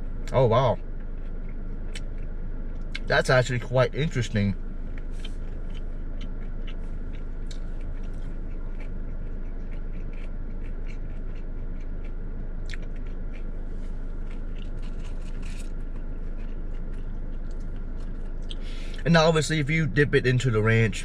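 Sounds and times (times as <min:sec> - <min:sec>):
low electrical hum: 0:00.0 - 0:21.0
person chewing crunchy food: 0:00.7 - 0:03.1, 0:04.9 - 0:19.0.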